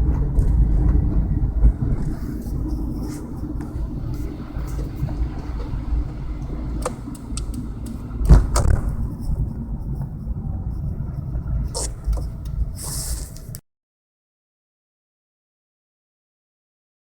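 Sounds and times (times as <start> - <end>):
car engine running: 0.0 - 13.6.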